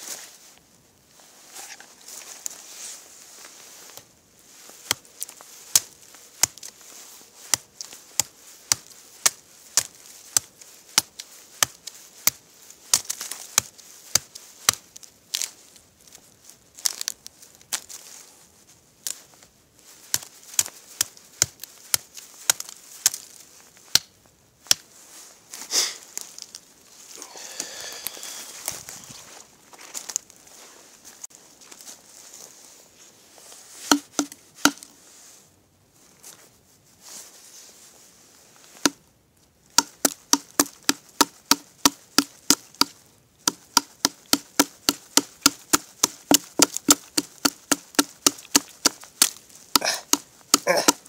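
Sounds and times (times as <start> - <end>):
hand tool chopping wood: 5.7 - 6.7, 7.5 - 14.8, 33.9 - 34.9, 39.8 - 51.0.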